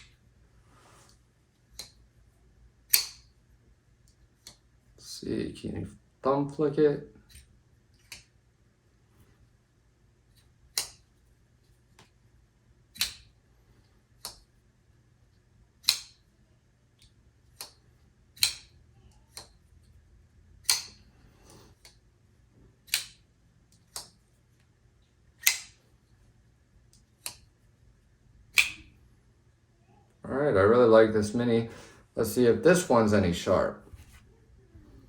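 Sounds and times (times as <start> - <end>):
faint steady hum: 0.0 - 35.0
folding knife clicking: 2.9 - 3.3, 10.7 - 11.0, 12.9 - 13.3, 15.8 - 16.2, 18.4 - 19.6, 20.6 - 22.0, 22.8 - 24.2, 25.4 - 25.8, 28.5 - 28.9.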